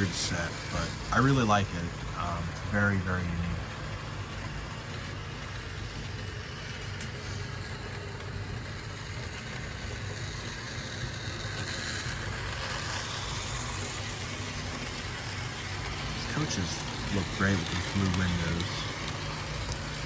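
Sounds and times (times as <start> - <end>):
model train motor hum: 0.0 - 20.0
wheels rolling on rails: 0.0 - 20.0.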